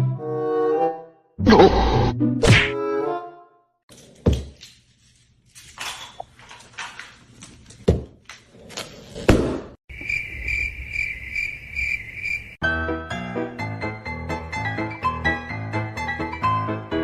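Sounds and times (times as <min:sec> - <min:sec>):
pulsing insect-like chirping: 0:09.9 - 0:12.6
piano music: 0:12.6 - 0:17.0.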